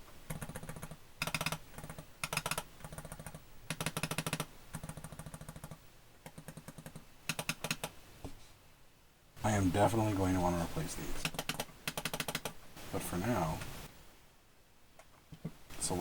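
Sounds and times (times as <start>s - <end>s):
mouse buttons clicking: 0.3s - 8.0s, 11.2s - 12.6s.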